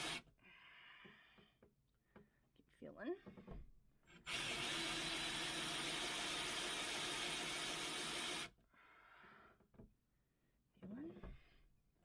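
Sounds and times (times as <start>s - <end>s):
power drill cutting wood: 0.0s - 0.2s, 4.3s - 8.5s.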